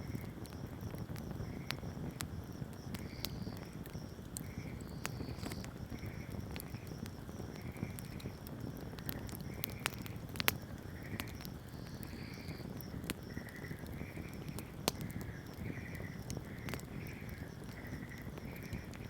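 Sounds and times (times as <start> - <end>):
campfire crackling and popping: 0.0 - 19.0.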